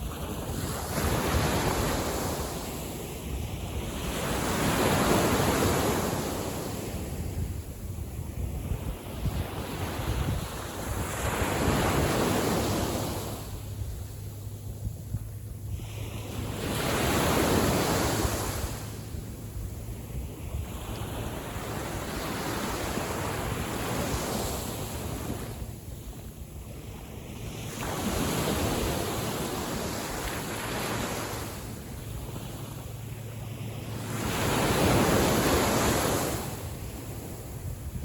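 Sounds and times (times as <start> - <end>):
small waves breaking: 15.7 - 38.0.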